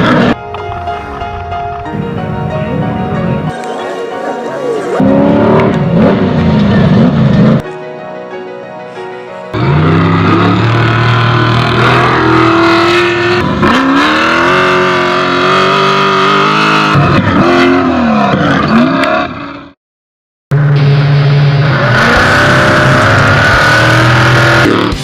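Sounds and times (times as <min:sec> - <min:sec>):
race vehicle engine accelerating: 0:02.7 - 0:07.6, 0:09.6 - 0:19.8, 0:20.5 - 0:25.0.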